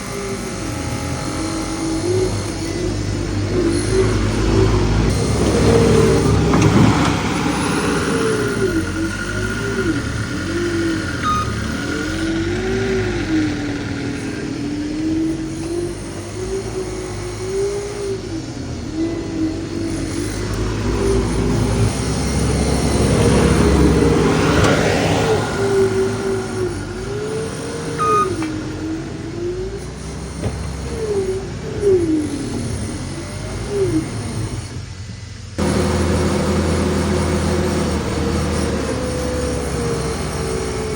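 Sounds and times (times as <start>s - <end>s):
skid steer engine under load: 0.0s - 40.9s
thin steady whine: 0.0s - 40.9s.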